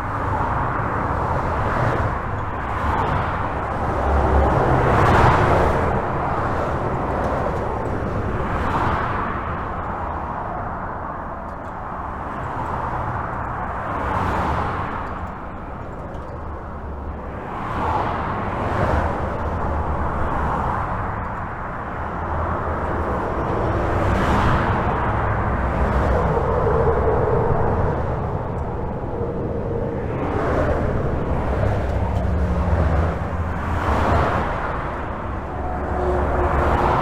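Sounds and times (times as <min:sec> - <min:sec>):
highway traffic rushing: 0:00.0 - 0:37.0
steady drone: 0:22.1 - 0:37.0
low rumble: 0:22.3 - 0:37.0.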